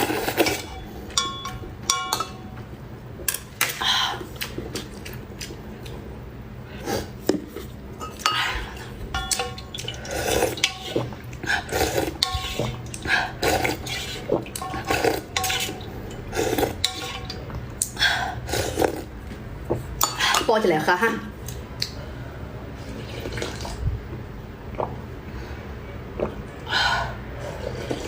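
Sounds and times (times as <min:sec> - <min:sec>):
close-up eating noises: 0:00.0 - 0:20.5, 0:21.4 - 0:28.0
utensils clinking on ceramic bowl: 0:00.3 - 0:02.6, 0:08.0 - 0:11.3, 0:11.9 - 0:17.6.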